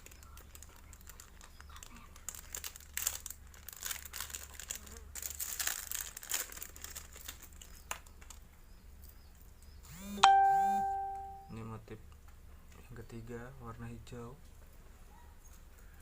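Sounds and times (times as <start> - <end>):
plastic packaging crinkling: 0.0 - 8.5.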